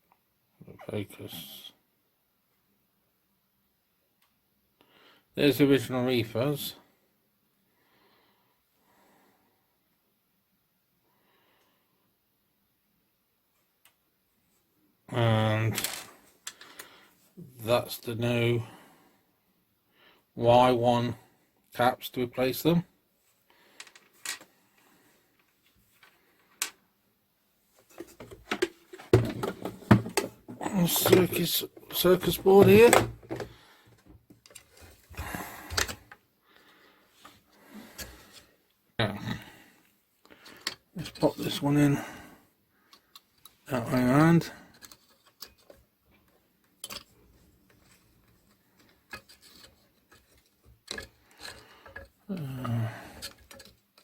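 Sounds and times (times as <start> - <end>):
clicks and knocks of small parts: 15.8 - 16.9, 23.7 - 24.5, 25.4 - 26.8, 27.8 - 36.2, 40.2 - 41.2, 44.7 - 45.8, 46.6 - 54.0.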